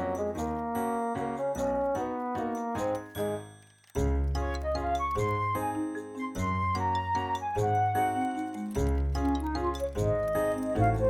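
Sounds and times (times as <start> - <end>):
bright background music: 0.0 - 11.0.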